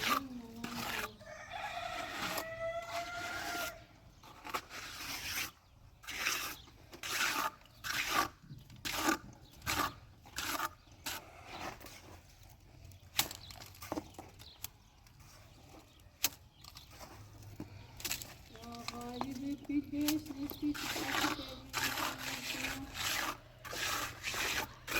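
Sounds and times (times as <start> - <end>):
rooster crowing: 1.2 - 3.8.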